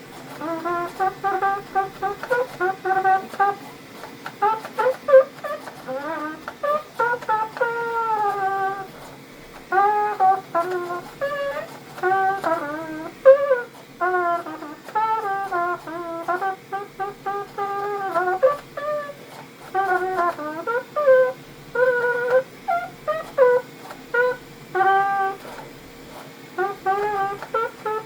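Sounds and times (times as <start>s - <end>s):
trumpet playing short notes: 0.0s - 28.0s.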